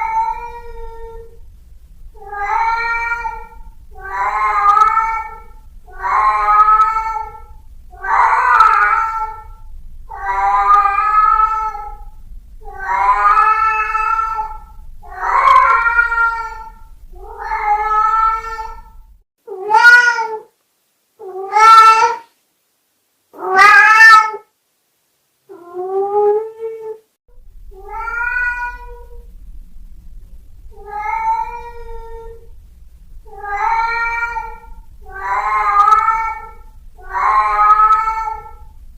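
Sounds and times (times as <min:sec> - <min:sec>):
cat meowing: 0:00.0 - 0:01.4, 0:02.2 - 0:20.5, 0:21.2 - 0:22.3, 0:23.4 - 0:24.5, 0:27.8 - 0:29.2, 0:30.7 - 0:32.5, 0:33.3 - 0:38.7.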